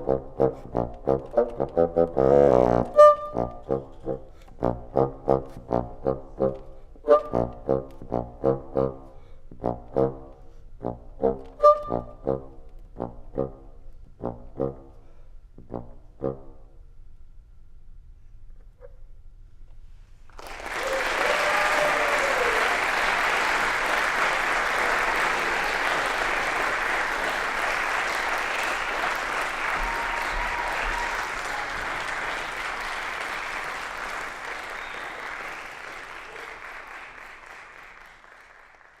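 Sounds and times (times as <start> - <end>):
audience applauding: 20.3 - 39.0.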